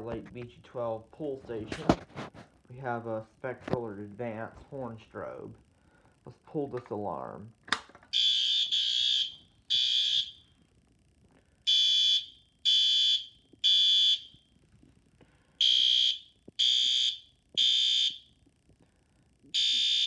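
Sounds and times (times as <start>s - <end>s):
fire alarm horn blasts: 8.1s - 10.5s, 11.7s - 14.5s, 15.6s - 18.4s, 19.5s - 20.0s.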